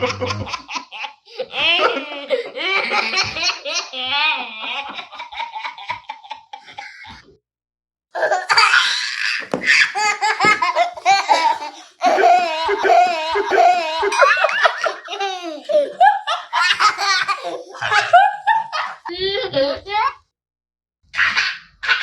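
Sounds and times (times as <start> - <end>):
baby giggling: 0.0 - 4.8, 8.2 - 19.8.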